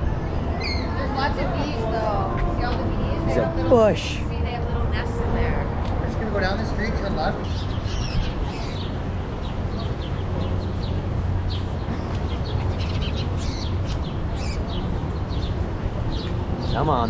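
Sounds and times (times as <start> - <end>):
low city rumble: 0.0 - 17.0
birds chirping: 0.6 - 1.5, 6.9 - 17.0.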